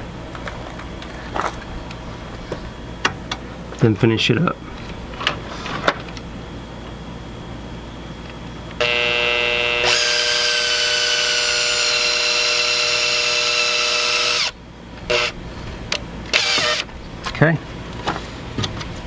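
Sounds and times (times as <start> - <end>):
electric drill whining: 8.8 - 15.4, 16.3 - 16.9.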